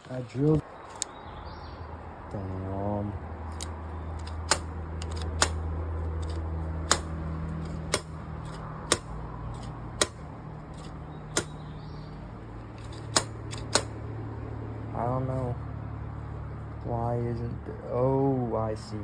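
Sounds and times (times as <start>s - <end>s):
throttle slide clicking shut: 3.6s - 5.6s, 6.2s - 10.2s, 12.8s - 13.9s.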